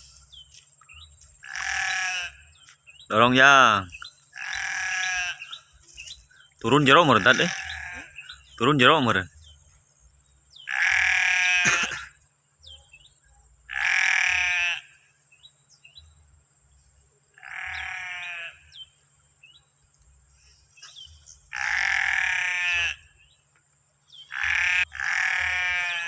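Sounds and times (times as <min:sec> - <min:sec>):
animal bleating: 0:01.4 - 0:02.4, 0:04.4 - 0:05.6, 0:06.8 - 0:08.4, 0:10.7 - 0:11.8, 0:13.7 - 0:15.0, 0:17.4 - 0:18.7, 0:21.5 - 0:23.2, 0:24.3 - 0:26.0.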